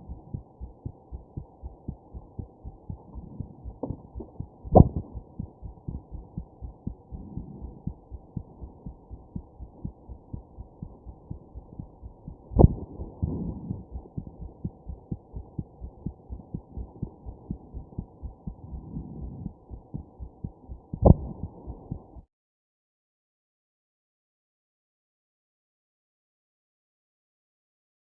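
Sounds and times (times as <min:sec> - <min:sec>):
muffled heartbeat thumps: 0:00.0 - 0:22.2.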